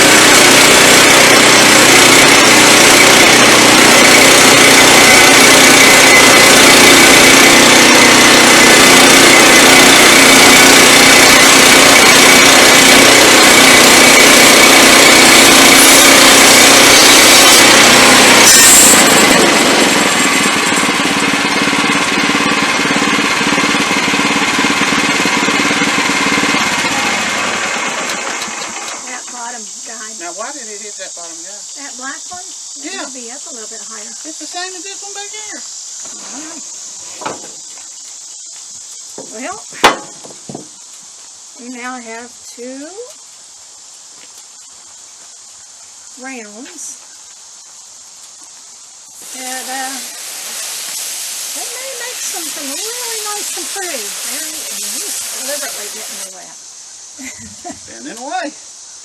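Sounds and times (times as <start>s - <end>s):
band sawmill sawing log: 0.0s - 29.3s, 49.2s - 56.4s.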